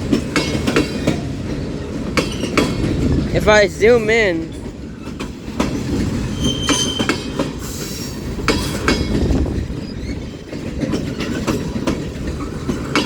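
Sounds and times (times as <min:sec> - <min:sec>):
freight train cars rumbling: 0:00.0 - 0:13.0
wheels clacking over rail joints: 0:00.0 - 0:13.0
high squeal: 0:06.3 - 0:08.2.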